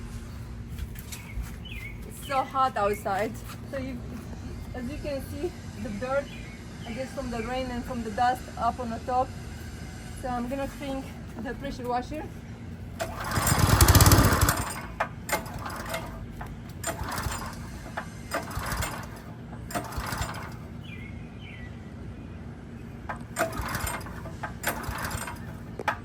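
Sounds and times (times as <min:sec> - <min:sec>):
short ratcheting rattles: 0:12.9 - 0:20.9, 0:23.1 - 0:26.0.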